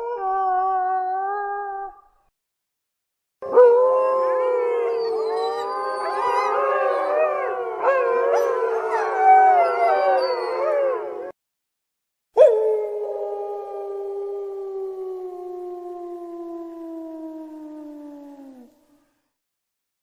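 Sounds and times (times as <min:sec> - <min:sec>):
wolves howling: 0:03.4 - 0:11.4, 0:12.4 - 0:18.7.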